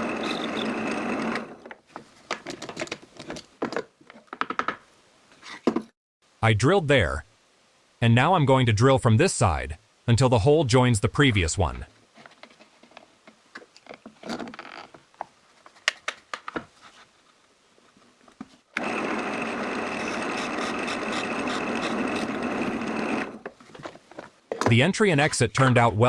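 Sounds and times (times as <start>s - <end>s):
drill press drilling wood: 0.0s - 1.6s, 18.8s - 23.5s.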